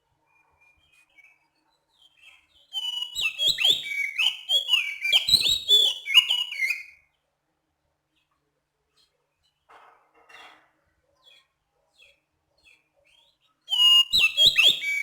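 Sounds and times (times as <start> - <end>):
bird singing whistled phrases: 2.6 - 7.0, 13.7 - 15.0.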